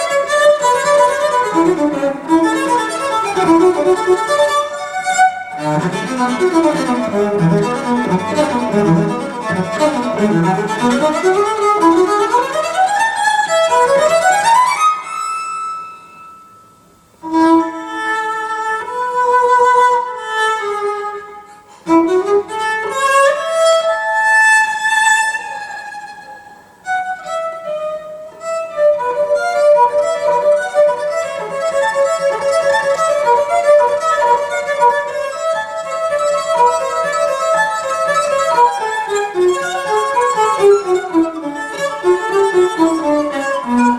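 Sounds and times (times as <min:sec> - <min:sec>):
cello over loudspeakers: 0:00.0 - 0:14.5, 0:17.2 - 0:43.9.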